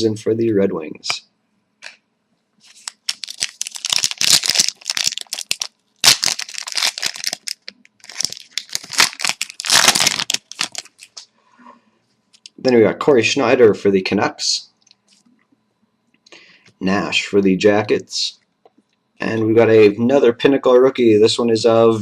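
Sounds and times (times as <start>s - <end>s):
card pack wrapper crinkling and tearing: 2.6s - 11.2s.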